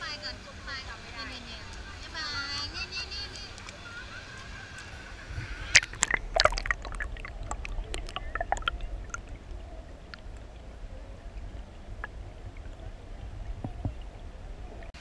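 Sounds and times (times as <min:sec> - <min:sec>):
low rumble of moving water: 0:00.0 - 0:15.0
water splashing and sloshing: 0:03.3 - 0:15.0.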